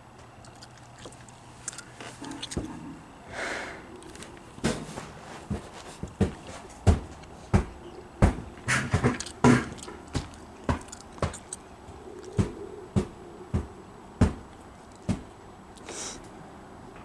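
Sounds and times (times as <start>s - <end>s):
sharp knocks: 4.6s - 11.6s, 12.3s - 14.5s.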